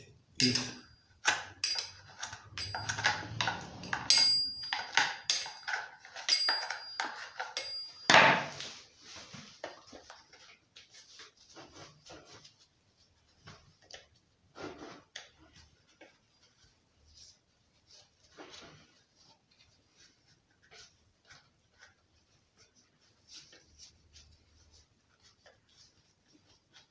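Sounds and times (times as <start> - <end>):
metal tool tapping and scraping: 0.4 - 8.6.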